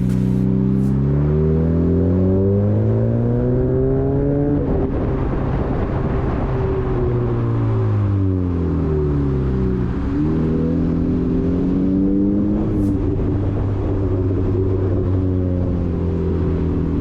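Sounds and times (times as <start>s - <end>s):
tyre noise: 0.0s - 1.0s
car engine accelerating: 0.0s - 17.0s
wind noise: 3.8s - 8.3s, 11.1s - 17.0s.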